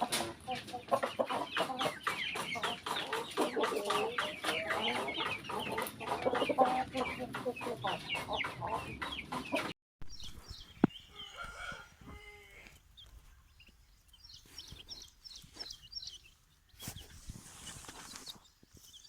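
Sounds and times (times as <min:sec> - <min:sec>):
chicks cheeping: 0:00.0 - 0:19.0
rooster crowing: 0:11.1 - 0:12.8.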